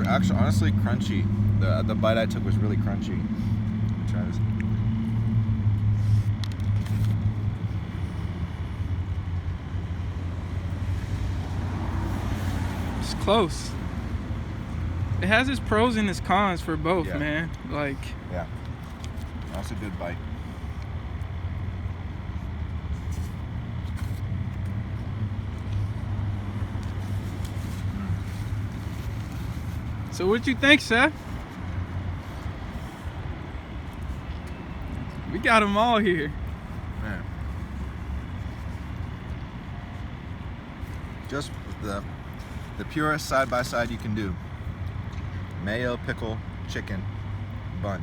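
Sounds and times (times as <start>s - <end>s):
car engine idling: 6.9s - 45.0s.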